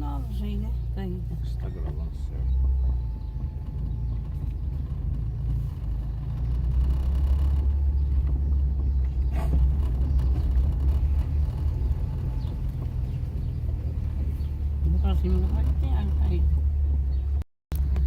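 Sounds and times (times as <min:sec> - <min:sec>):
car engine and road noise: 0:00.0 - 0:18.0.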